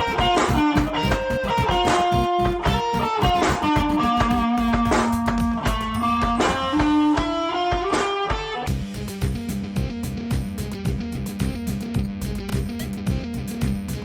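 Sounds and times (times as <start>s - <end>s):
bass: 0.0s - 7.1s, 8.7s - 14.0s
guitar playing sustained notes: 0.0s - 7.9s
drum beat: 0.0s - 14.0s.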